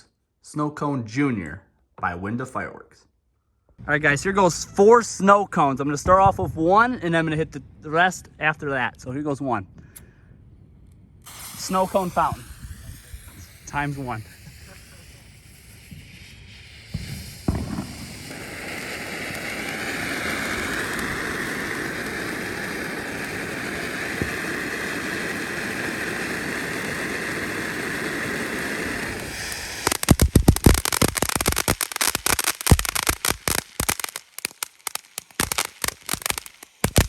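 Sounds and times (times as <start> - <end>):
firework fountain hissing sparks: 11.2 - 37.0
sharp crackling pops: 11.2 - 37.0.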